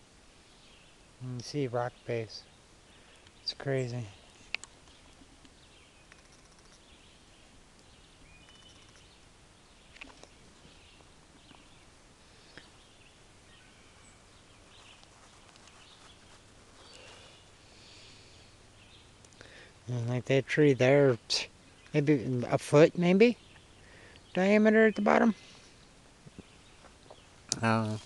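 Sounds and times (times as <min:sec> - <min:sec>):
soft hiss: 0:00.0 - 0:28.0
bird chirps: 0:02.0 - 0:17.6
soft clicks: 0:04.5 - 0:06.9, 0:07.7 - 0:09.1
critter calls: 0:08.4 - 0:09.2.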